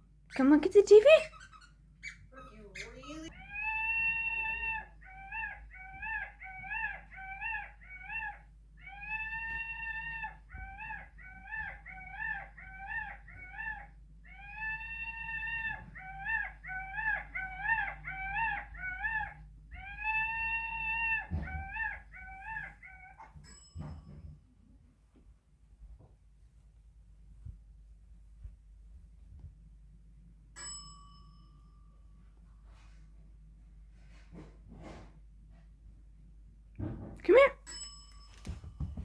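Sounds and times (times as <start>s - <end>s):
recorded dog whining and yipping: 0.9s - 24.0s.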